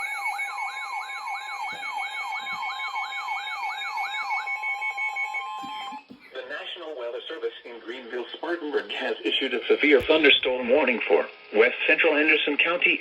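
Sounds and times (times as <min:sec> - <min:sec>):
electronic siren-like yelp: 0:00.0 - 0:06.1.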